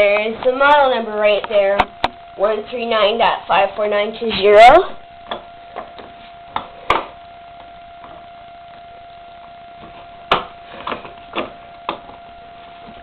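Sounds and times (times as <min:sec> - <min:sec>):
faint high hum: 0:00.0 - 0:13.0
sharp clicks and knocks: 0:09.4 - 0:12.2.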